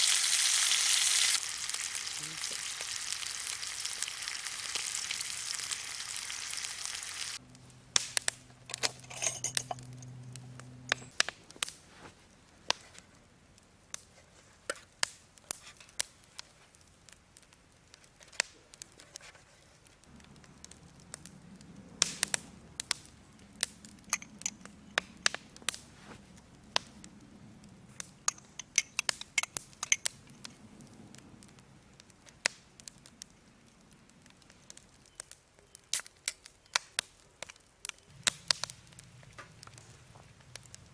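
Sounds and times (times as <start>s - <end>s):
food sizzling in a pan: 0.0s - 7.4s
campfire crackling and popping: 0.0s - 40.9s.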